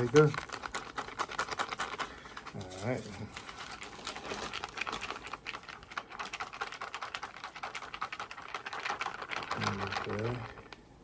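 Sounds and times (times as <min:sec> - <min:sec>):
plastic pouches crinkling: 0:00.0 - 0:11.0.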